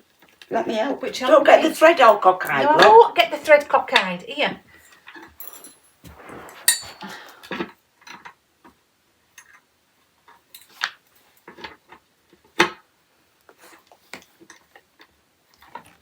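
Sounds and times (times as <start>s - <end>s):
brief rustle: 5.4s - 7.6s.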